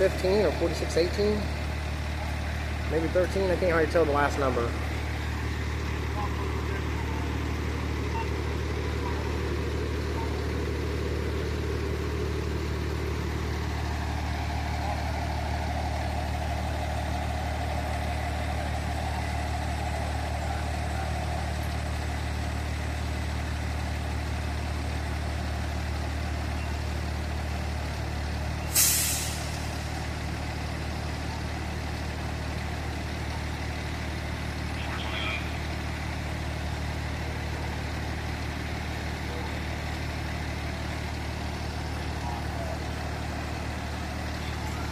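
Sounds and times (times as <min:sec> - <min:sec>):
fire engine idling: 0:00.0 - 0:44.9
air brakes hissing: 0:28.7 - 0:29.7.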